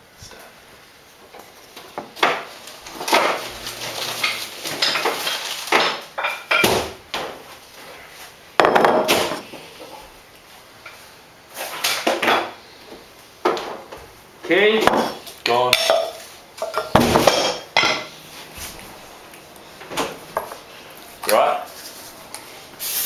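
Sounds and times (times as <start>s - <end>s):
containers clattering and scraping: 2.5s - 6.6s.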